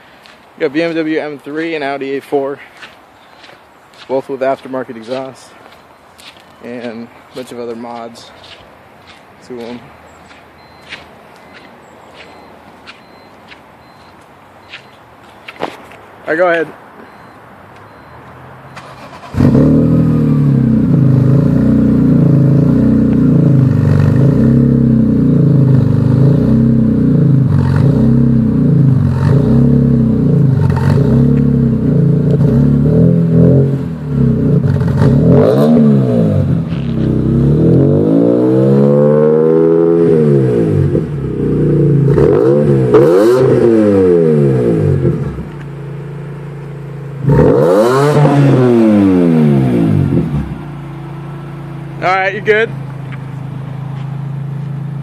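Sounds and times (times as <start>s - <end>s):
car engine revving: 18.4s - 55.0s.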